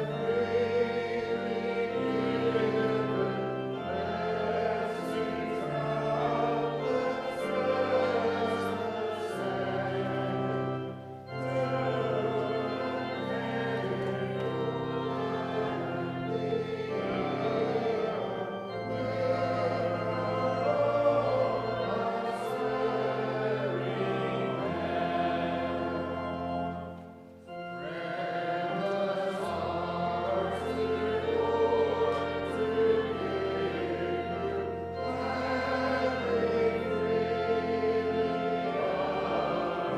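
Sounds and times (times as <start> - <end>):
congregation singing a hymn: 0.0 - 39.9
organ playing: 0.0 - 39.9.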